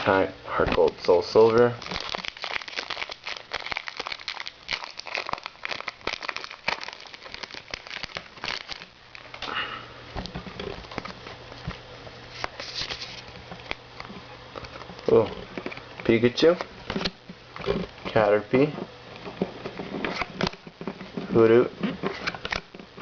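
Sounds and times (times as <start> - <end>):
foil wrapper crinkling: 0.7 - 9.4, 12.3 - 13.8.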